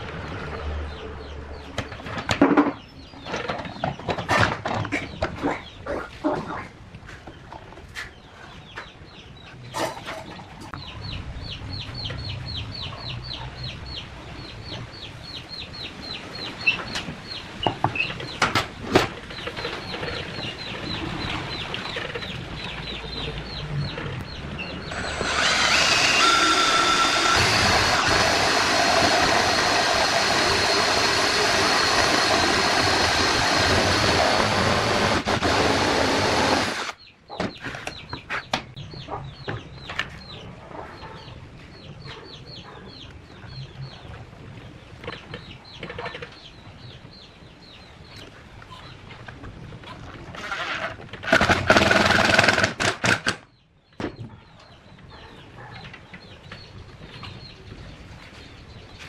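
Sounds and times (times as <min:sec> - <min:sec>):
power saw motor running: 0:24.7 - 0:37.0, 0:51.3 - 0:52.9.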